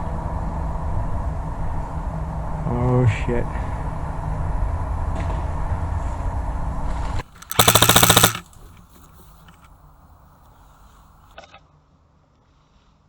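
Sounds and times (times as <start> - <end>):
airsoft rifle full-auto burst: 7.3 - 8.6.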